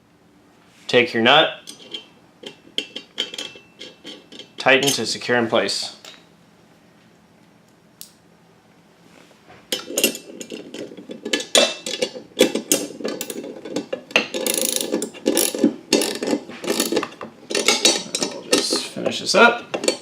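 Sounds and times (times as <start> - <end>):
metallic clicking and rattling: 9.7 - 19.1, 19.7 - 20.0.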